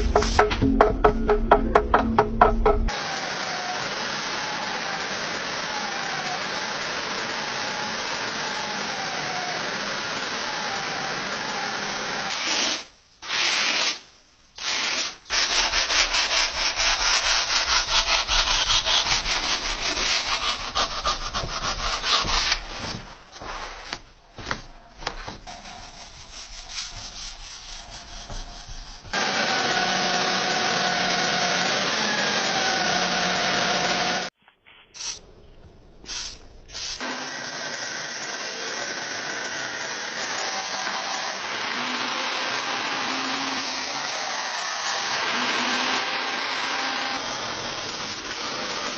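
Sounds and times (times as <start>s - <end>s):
steel blade being sanded: 14.7s - 22.8s, 25.5s - 29.2s, 36.1s - 37.1s.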